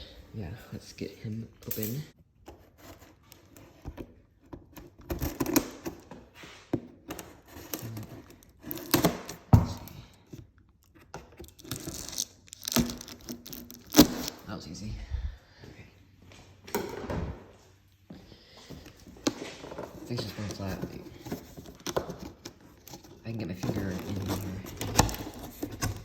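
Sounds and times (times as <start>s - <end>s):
packing tape ripping: 11.3s - 14.4s
cardboard flaps rustling: 19.0s - 26.0s.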